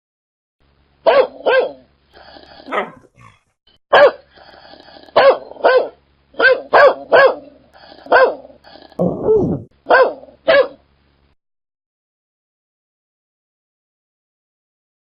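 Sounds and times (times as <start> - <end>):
dog barking: 1.1 - 1.8, 2.7 - 4.2, 5.2 - 8.5, 9.9 - 10.8
dog growling: 2.4 - 3.5.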